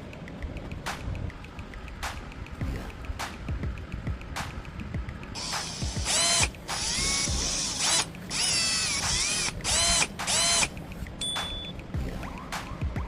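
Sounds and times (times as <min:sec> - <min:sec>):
small motor whirring: 0:05.4 - 0:11.2.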